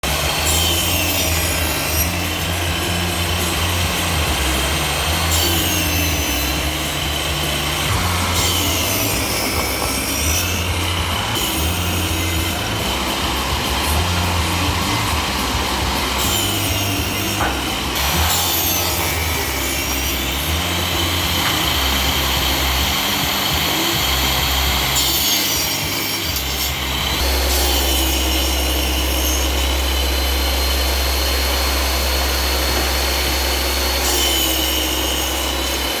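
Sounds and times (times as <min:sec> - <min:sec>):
power saw cutting wood: 0:00.0 - 0:36.0
low hum: 0:26.5 - 0:36.0.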